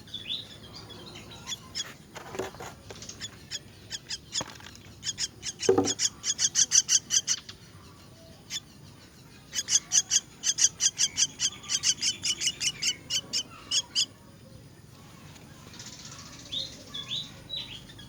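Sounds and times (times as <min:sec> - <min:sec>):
chicks begging chirps: 0:00.0 - 0:18.0.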